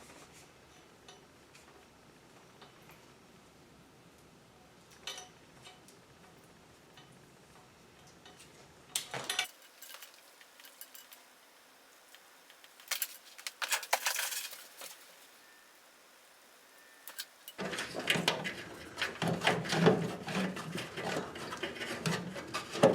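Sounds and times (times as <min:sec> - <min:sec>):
metallic clinks of tools: 0:09.3 - 0:11.3, 0:16.9 - 0:17.6.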